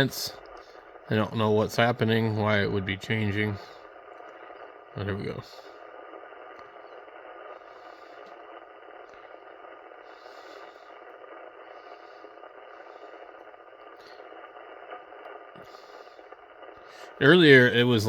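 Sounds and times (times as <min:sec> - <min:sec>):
radio static hiss: 0:00.0 - 0:18.0.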